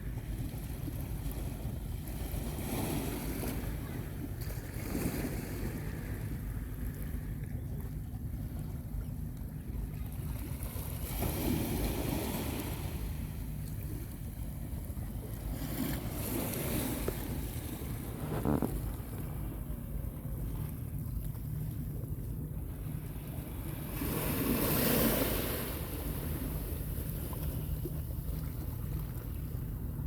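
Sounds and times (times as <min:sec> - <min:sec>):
wind buffeting microphone: 0:11.5 - 0:21.7.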